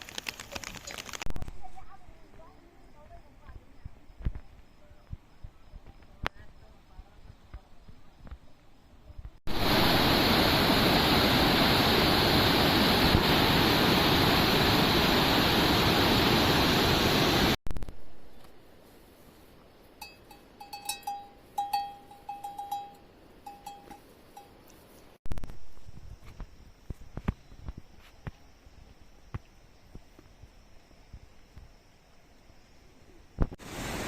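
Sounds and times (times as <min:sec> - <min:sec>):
heavy rain pouring: 0:09.5 - 0:17.6.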